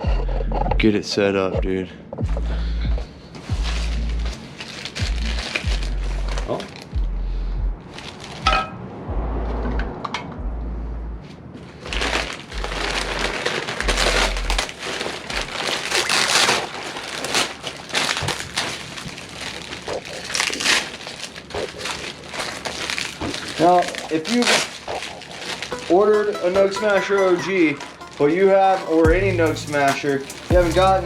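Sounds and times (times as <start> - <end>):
packaging crinkling: 3.4 - 7.0, 7.8 - 8.5, 11.7 - 29.1, 29.7 - 31.0.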